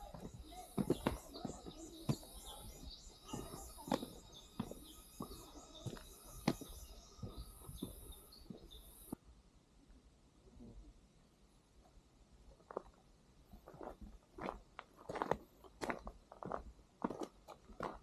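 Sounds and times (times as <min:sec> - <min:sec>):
footsteps on forest trail: 0:00.0 - 0:09.2, 0:13.6 - 0:18.0.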